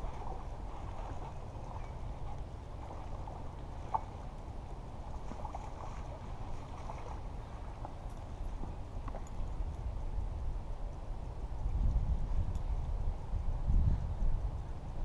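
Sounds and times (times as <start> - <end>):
wind buffeting microphone: 0.0 - 15.0
faint small ticks: 7.8 - 15.0.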